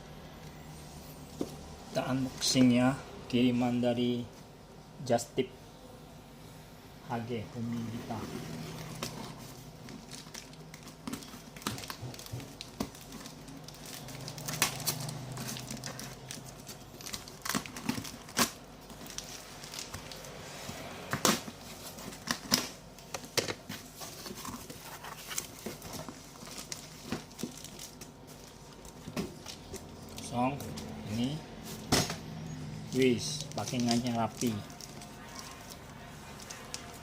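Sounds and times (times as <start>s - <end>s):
packaging rustling: 8.2s - 32.2s, 32.9s - 37.0s
packaging tearing: 8.8s - 20.4s, 33.2s - 37.0s.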